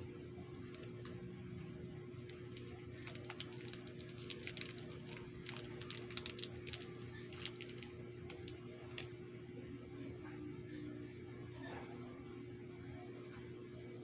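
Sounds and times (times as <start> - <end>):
steady low hum: 0.0 - 14.0
candy wrapper crinkling: 0.6 - 1.2, 2.3 - 9.1.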